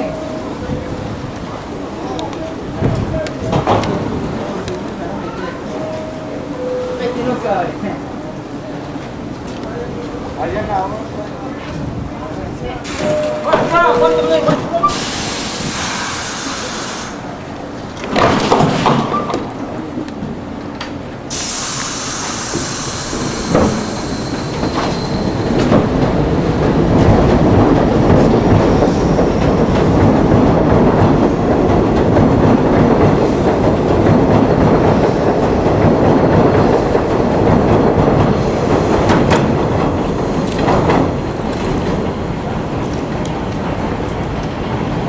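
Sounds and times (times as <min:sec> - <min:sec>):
subway train running: 0:00.0 - 0:45.0
train brake hiss: 0:14.8 - 0:17.4, 0:21.3 - 0:25.4
wheels clicking over rail joints: 0:17.6 - 0:45.0.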